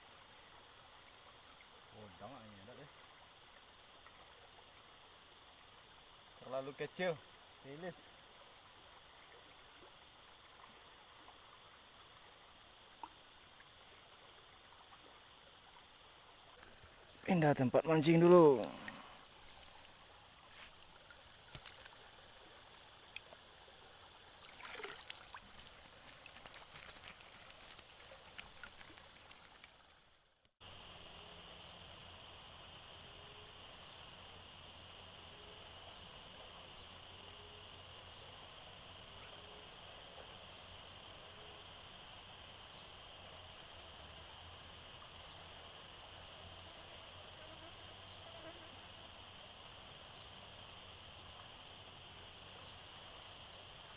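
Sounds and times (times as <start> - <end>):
insects chirring: 0.0 - 53.9
rustles and light clicks: 20.5 - 22.0, 24.8 - 30.5.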